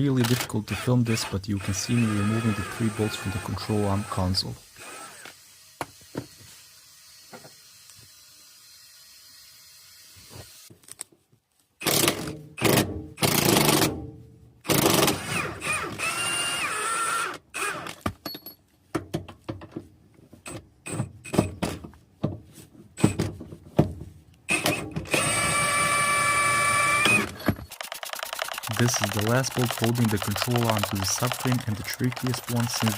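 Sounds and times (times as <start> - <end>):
power tool running in bursts: 25.1 - 32.9.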